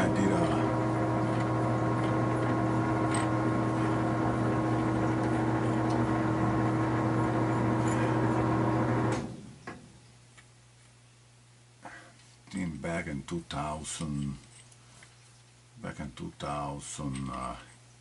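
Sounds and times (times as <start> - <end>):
machine electric hum: 0.0 - 10.0.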